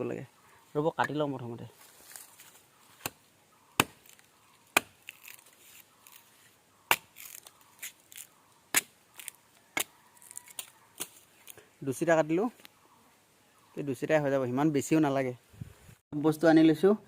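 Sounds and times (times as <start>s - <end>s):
machete chopping tree trunk: 3.0s - 3.2s, 3.8s - 5.4s, 6.9s - 8.0s, 8.7s - 9.9s.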